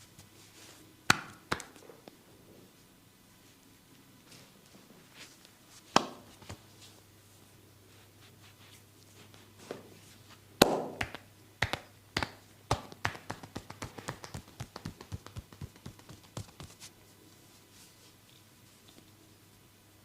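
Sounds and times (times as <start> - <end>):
hands slapping bare skin: 1.1 - 1.8, 5.9 - 6.6, 10.6 - 16.9.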